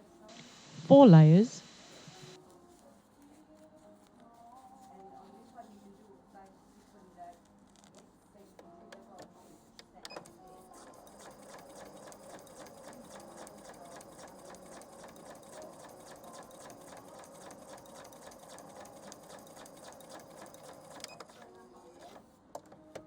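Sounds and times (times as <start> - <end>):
sewing machine stitching: 10.1 - 22.2.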